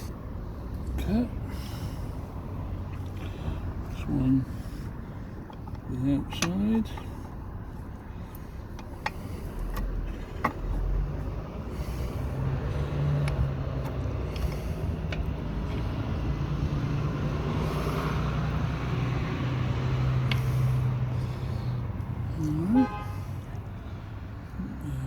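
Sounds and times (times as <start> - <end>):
low engine hum: 0.0 - 25.0
brake parts clicking: 5.2 - 11.4, 12.0 - 16.2, 20.2 - 22.6.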